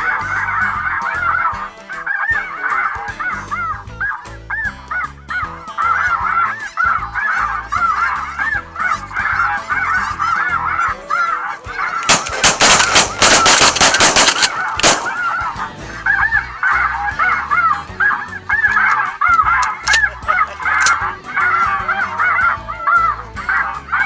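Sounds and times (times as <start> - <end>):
geese calling: 0.0 - 24.0
shotgun fire: 12.1 - 15.5.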